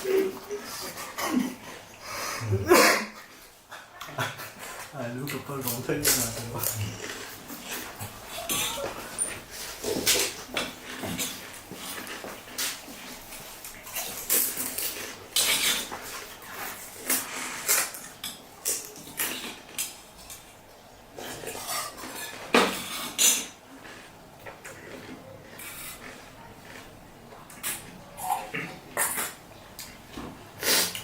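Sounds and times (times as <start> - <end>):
food crunching: 4.0 - 31.0
dishes and cutlery clinking: 21.3 - 23.6.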